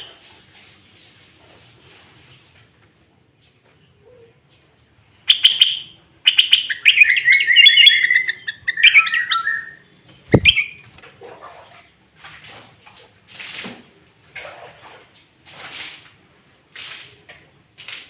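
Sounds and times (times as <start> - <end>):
bubbling bird song phrase: 6.3 - 10.8
sharp knock: 10.3 - 10.6
bird short call: 10.3 - 10.8.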